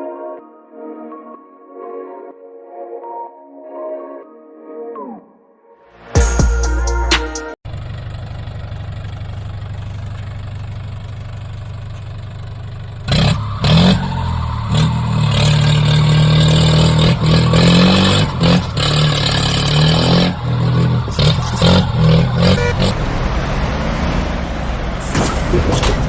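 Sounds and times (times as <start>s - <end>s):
tractor engine running: 7.7s - 26.0s.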